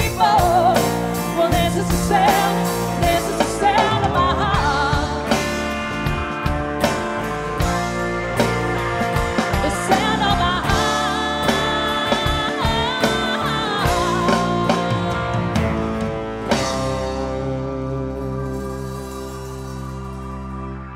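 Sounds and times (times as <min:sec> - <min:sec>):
wordless vocal line: 0:00.0 - 0:05.4
live band music: 0:00.0 - 0:20.9
guitar chord ringing out: 0:13.4 - 0:20.9.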